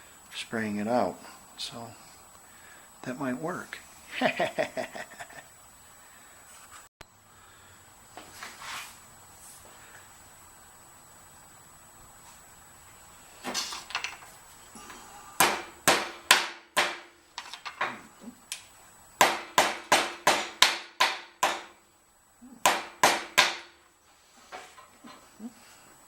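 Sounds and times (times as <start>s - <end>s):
hammer striking metal: 15.4s - 17.1s, 19.2s - 21.7s, 22.6s - 23.7s.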